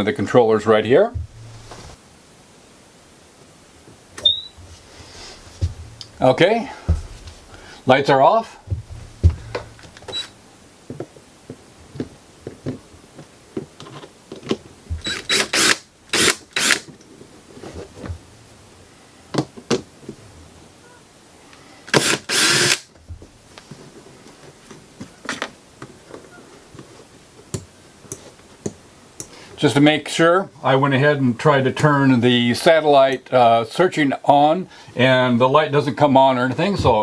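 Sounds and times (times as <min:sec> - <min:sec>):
cordless drill-driver running: 0:15.0 - 0:16.9, 0:21.9 - 0:22.9.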